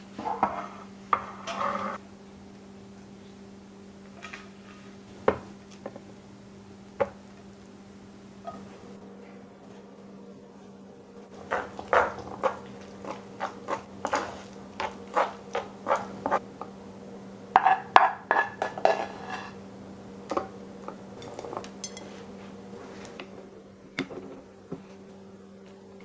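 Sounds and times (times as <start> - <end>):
dishes and utensils clinking: 17.6 - 19.6, 21.2 - 22.3.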